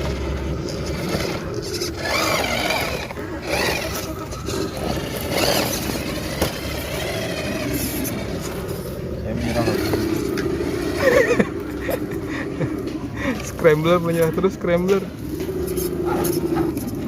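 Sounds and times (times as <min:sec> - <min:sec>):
toy truck motor whining: 0:00.0 - 0:11.3.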